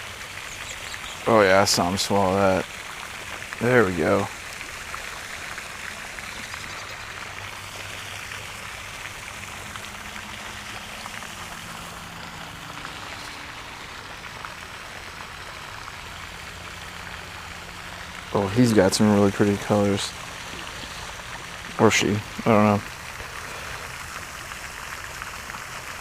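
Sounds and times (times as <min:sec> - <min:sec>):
rushing watery hiss: 0:00.0 - 0:26.0.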